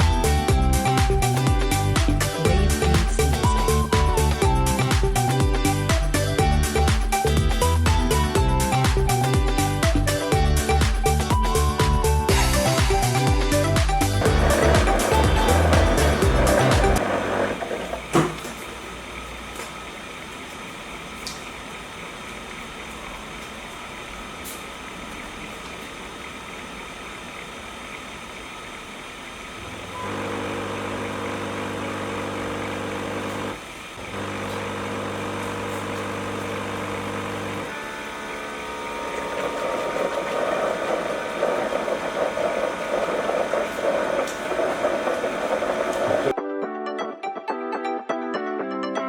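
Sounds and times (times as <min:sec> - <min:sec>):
low pitched hum: 0:14.1 - 0:17.6
robot vacuum whirring: 0:14.2 - 0:18.0, 0:29.6 - 0:46.3.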